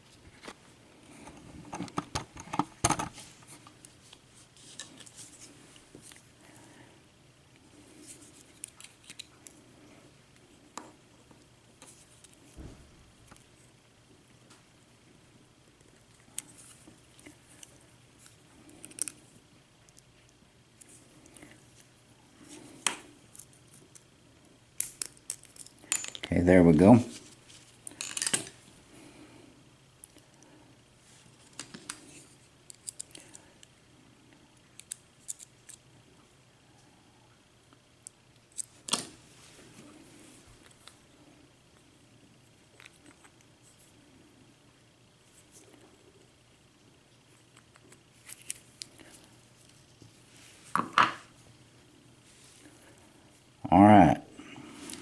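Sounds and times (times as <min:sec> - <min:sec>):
metal parts clattering: 0:28.0 - 0:28.5
small metal parts clicking: 0:34.8 - 0:35.8.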